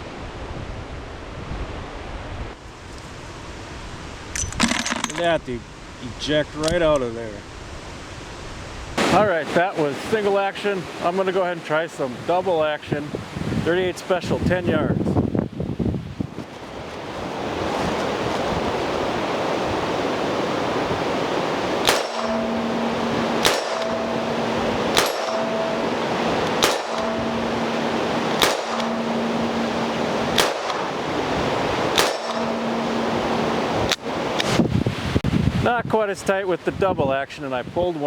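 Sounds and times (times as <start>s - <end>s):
wind noise on microphone: 0.0s - 9.4s, 12.1s - 37.9s
revolver shots with metallic ring: 21.7s - 34.2s.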